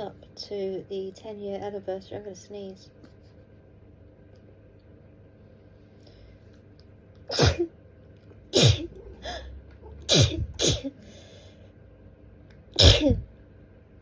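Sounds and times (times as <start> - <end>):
person sneezing: 7.3 - 7.7, 8.5 - 9.5, 10.1 - 11.0, 12.8 - 13.3.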